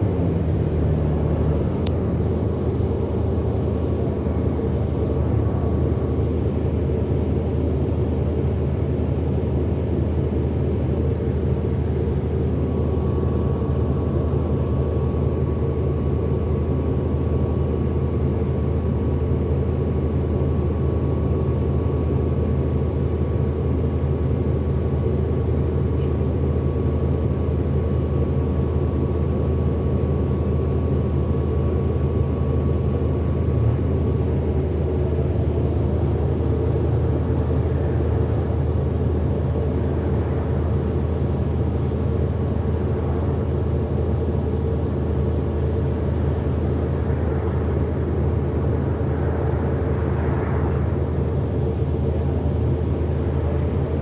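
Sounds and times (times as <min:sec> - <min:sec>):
rising and falling motor whines: 0:00.0 - 0:03.4
bus drivetrain hum: 0:00.0 - 0:54.0
thin steady whine: 0:00.0 - 0:54.0.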